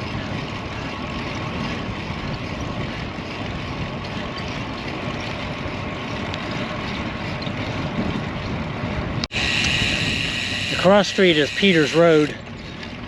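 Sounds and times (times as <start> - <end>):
wind rushing over microphone: 0.0 - 10.4.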